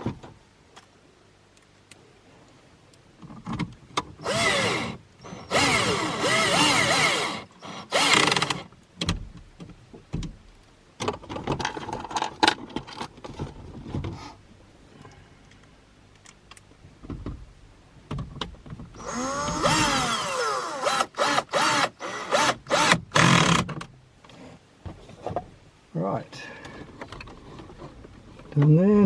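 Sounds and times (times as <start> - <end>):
cordless drill motor spinning: 4.2 - 8.6, 19.0 - 23.6
handling knocks and clatter: 11.0 - 14.2, 24.8 - 25.6.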